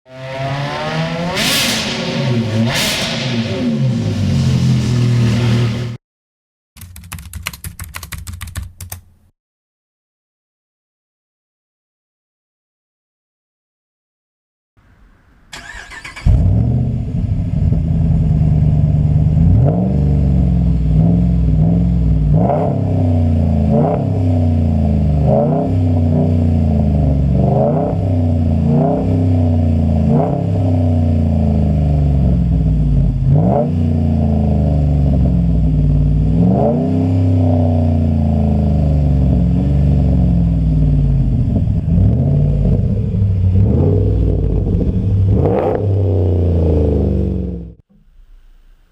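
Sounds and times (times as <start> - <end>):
engine idling and revving: 0.1 - 6.0, 15.6 - 48.0
engine cranking: 15.6 - 16.4.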